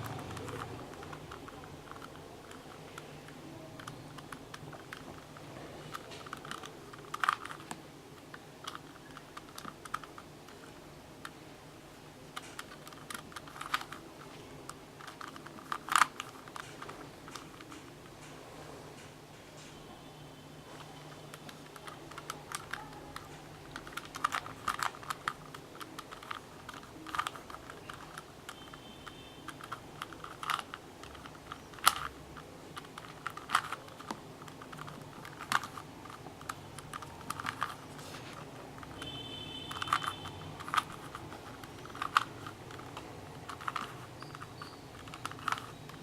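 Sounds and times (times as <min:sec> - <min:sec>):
puzzle cube layers clicking: 0:00.0 - 0:11.4, 0:12.3 - 0:18.4, 0:20.7 - 0:28.8, 0:29.4 - 0:46.0.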